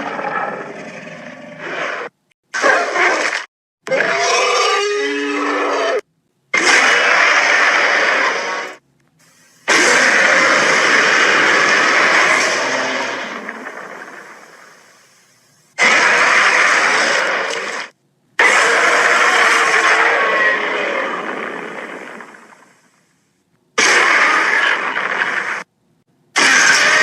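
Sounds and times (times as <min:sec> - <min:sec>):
monster roaring: 0:09.7 - 0:14.5, 0:15.8 - 0:21.4, 0:26.4 - 0:27.0.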